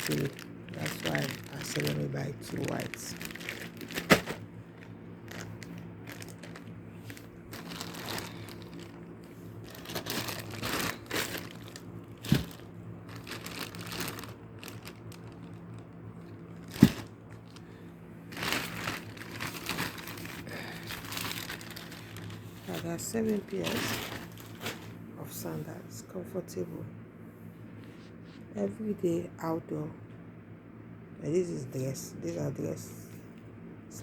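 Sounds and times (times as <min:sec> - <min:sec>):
plastic packaging crinkling: 0:00.0 - 0:25.0
faint steady hum: 0:00.0 - 0:34.0.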